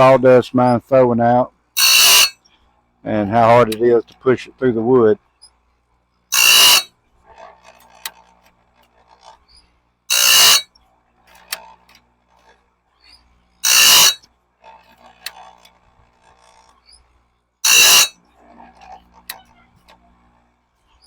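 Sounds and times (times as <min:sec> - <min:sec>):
grinding wheel on saw blade: 0:01.8 - 0:02.4, 0:03.1 - 0:05.1, 0:06.3 - 0:10.7, 0:11.3 - 0:17.0, 0:17.6 - 0:19.4.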